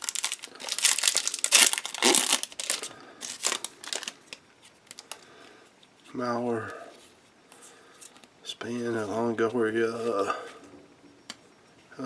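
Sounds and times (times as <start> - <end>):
wrapper crinkling: 0.0 - 5.3.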